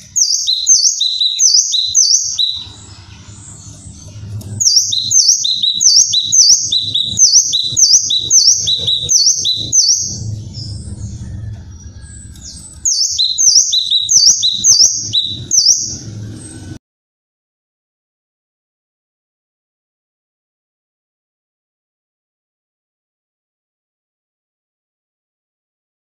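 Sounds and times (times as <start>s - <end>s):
bird calling high notes: 0.0s - 16.8s.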